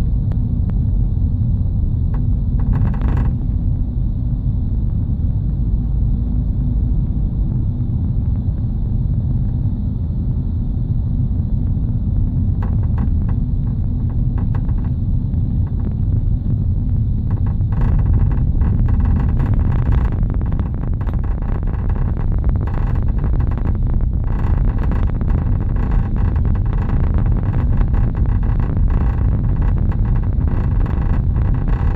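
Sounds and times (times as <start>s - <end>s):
car driving rumble: 0.0s - 31.9s.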